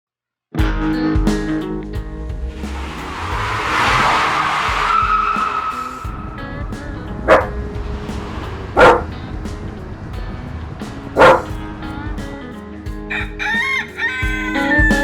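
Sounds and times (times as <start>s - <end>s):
background music: 0.6s - 15.0s
dog barking: 7.3s - 7.5s, 8.8s - 9.1s, 11.2s - 11.5s.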